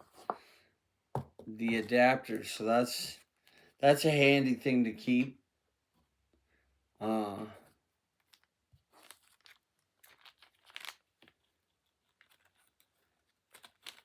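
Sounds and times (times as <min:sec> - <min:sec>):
plastic packaging crinkling: 0:08.3 - 0:14.0.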